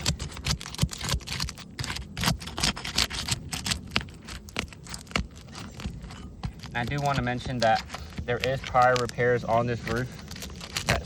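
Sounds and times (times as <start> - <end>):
metal tool scraping under shingles: 0.0 - 11.0.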